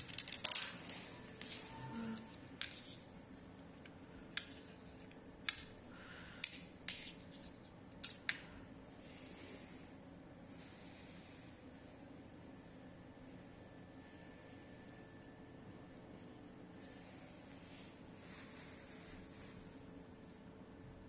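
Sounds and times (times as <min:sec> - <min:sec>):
small hard parts clicking: 0:00.0 - 0:03.1, 0:03.8 - 0:08.5
faint steady background noise: 0:00.0 - 0:21.0.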